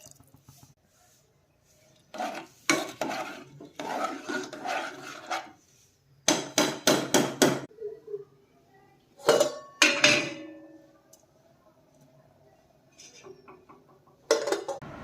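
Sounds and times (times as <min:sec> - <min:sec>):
metal cookware knocking: 0:09.2 - 0:10.8, 0:13.2 - 0:14.8.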